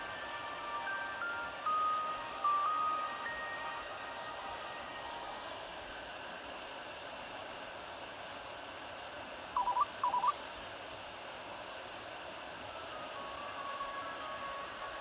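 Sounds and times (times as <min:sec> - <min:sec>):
phone ringtone calls: 0:09.6 - 0:10.3.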